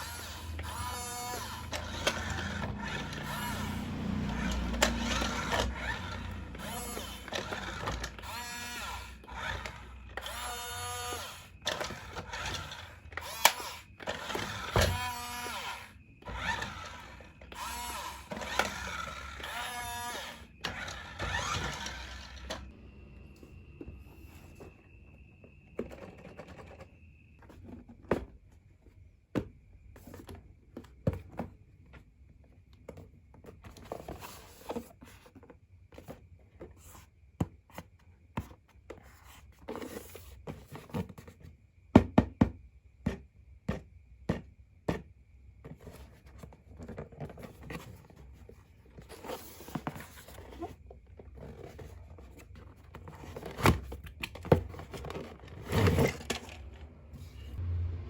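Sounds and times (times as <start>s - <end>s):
plastic parts knocking and clicking: 48.9s - 56.9s.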